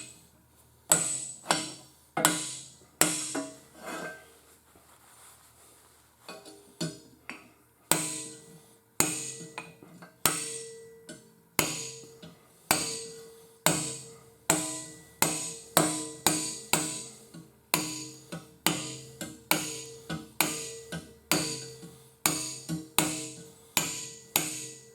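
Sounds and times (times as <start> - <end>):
hammer striking sheet steel: 0.9 - 3.6, 7.9 - 24.9.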